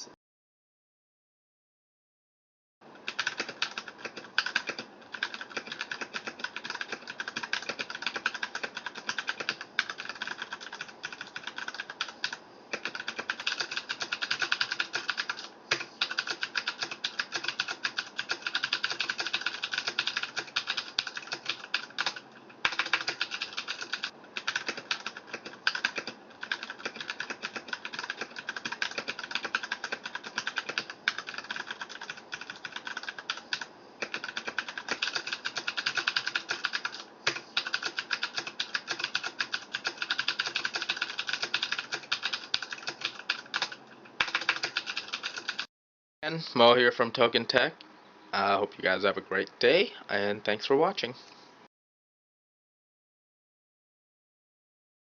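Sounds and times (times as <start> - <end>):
mechanical keyboard typing: 3.1 - 45.7.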